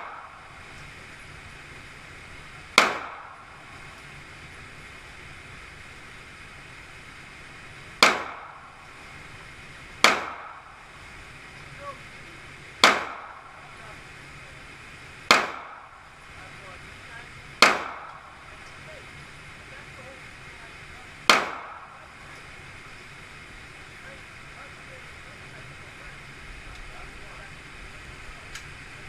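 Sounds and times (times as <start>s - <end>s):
pistol shots: 0.0s - 0.8s, 2.7s - 4.0s, 8.0s - 9.1s, 10.0s - 11.0s, 12.8s - 13.9s, 15.3s - 16.2s, 17.6s - 18.8s, 21.2s - 22.4s.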